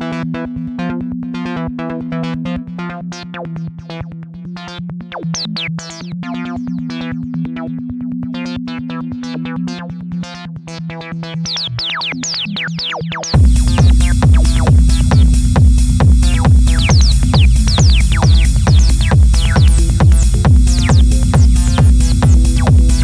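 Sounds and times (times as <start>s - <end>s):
low synth drone: 13.4s - 23.0s
repeated plucked synth notes: 13.4s - 23.0s.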